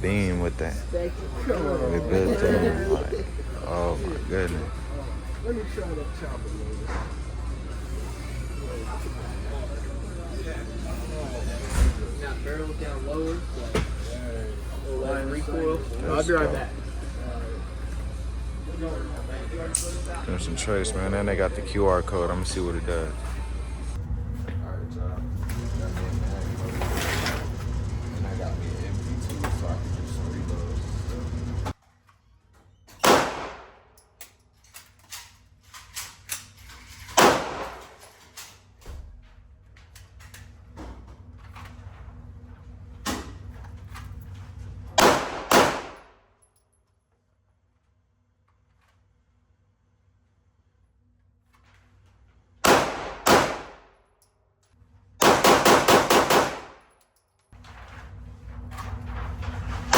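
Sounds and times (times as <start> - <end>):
pistol shots echoing indoors: 33.0 - 33.8, 37.2 - 38.0, 45.0 - 46.2, 52.6 - 53.9, 55.2 - 57.0
loud gunshots in a room: 33.0 - 33.9, 37.2 - 38.0, 45.0 - 46.2, 52.6 - 54.0, 55.2 - 56.9.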